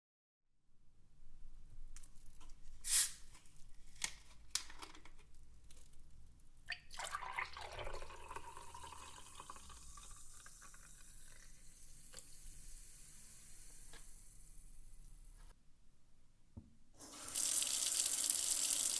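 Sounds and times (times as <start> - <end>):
liquid pouring into container: 6.7 - 12.8.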